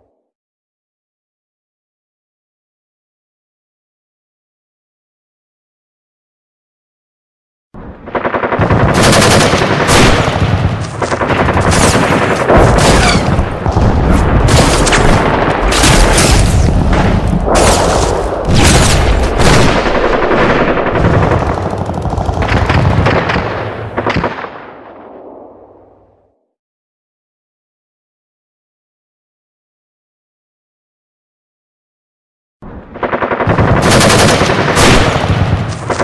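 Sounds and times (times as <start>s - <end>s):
automatic gunfire: 8.1s - 13.6s, 33.0s - 36.0s.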